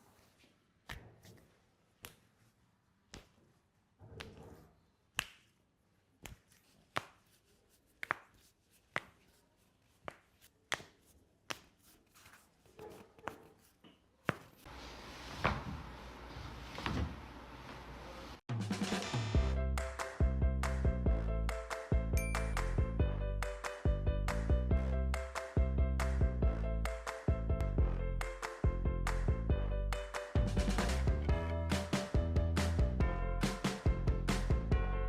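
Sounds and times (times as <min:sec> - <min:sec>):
music: 0:18.5 - 0:35.0.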